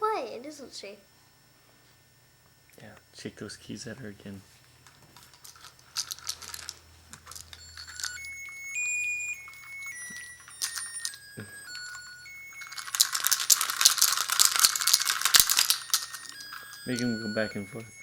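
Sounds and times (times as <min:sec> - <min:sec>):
loud continuous rattling: 0:05.2 - 0:08.2, 0:10.4 - 0:17.6
keys jangling: 0:05.2 - 0:08.7, 0:09.4 - 0:18.0
toy electronic beeping tune: 0:07.2 - 0:18.0.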